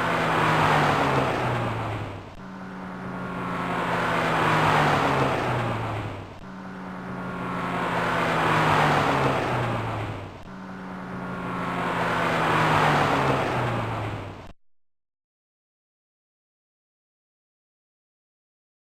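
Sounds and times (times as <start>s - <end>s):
car driving past: 0.0s - 14.5s.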